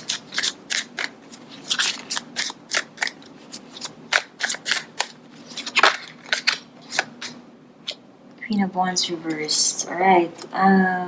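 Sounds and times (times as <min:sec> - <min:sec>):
cards being shuffled: 0:00.0 - 0:08.0.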